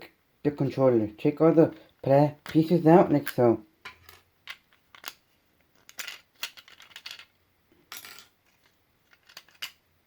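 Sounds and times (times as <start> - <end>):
small plastic parts clicking: 4.1 - 7.3, 7.9 - 9.8.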